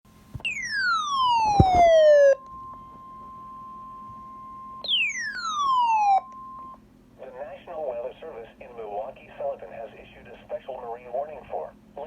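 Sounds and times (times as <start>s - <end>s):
falling siren sweeps: 0.4s - 6.8s.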